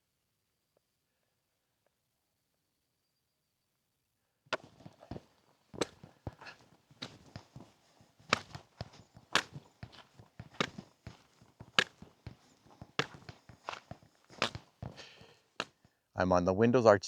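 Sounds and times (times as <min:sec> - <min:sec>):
footsteps crunching on trail: 0:04.6 - 0:16.0.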